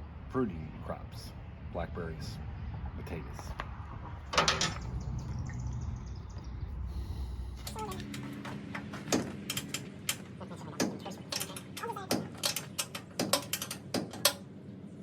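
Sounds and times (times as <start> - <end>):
hand tools clicking on metal: 7.7 - 14.5.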